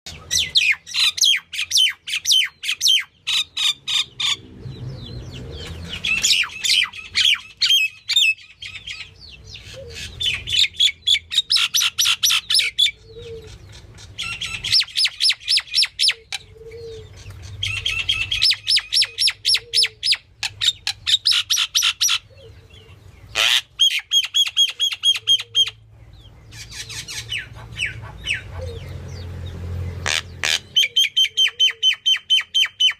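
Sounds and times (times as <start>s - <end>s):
myna bird calling: 0.1s - 32.9s.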